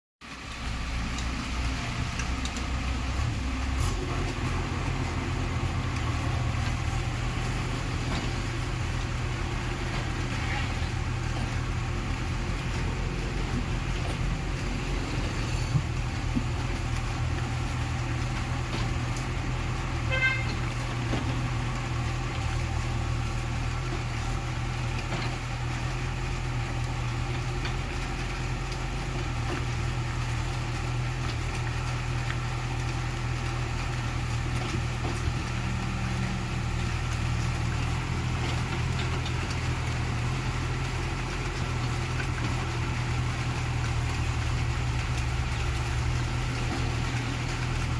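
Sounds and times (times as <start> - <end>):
excavator diesel engine running: 0.2 - 47.9
brief horn: 20.0 - 20.7.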